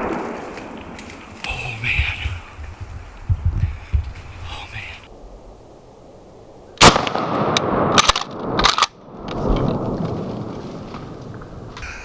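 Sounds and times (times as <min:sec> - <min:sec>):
rumbling echo: 0:00.0 - 0:05.4
shotgun blast: 0:06.8 - 0:08.6.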